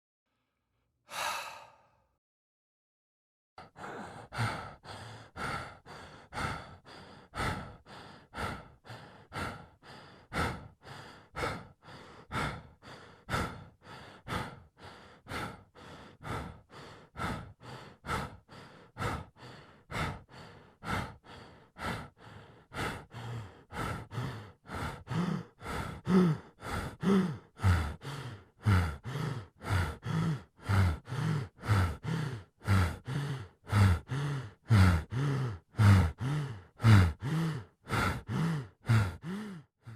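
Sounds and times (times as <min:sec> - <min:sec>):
person breathing heavily: 0:01.1 - 0:02.2, 0:03.6 - 0:39.9.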